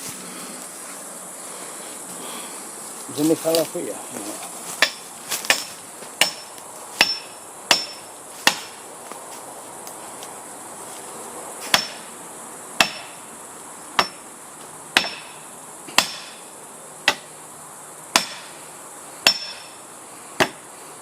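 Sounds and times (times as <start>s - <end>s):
heavy blows on felling wedge: 3.0s - 8.8s, 18.1s - 18.6s.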